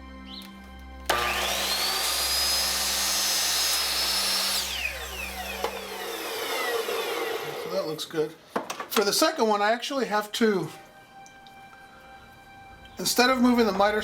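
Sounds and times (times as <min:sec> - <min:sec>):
miter saw whining: 0:01.1 - 0:07.9.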